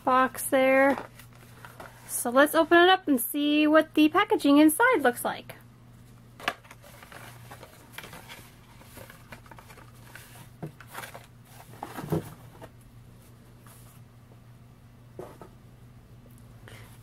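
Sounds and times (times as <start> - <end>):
packaging rustling: 0.8 - 2.1, 6.4 - 12.8.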